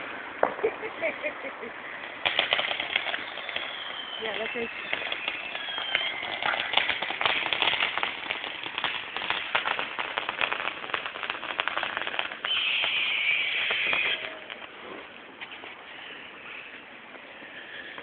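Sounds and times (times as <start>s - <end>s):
fireworks crackling: 0.0s - 18.0s
steady hiss: 0.0s - 18.0s.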